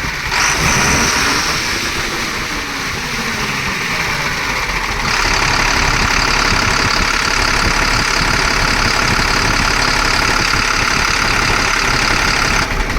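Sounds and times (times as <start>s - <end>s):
engine running: 0.0s - 12.9s.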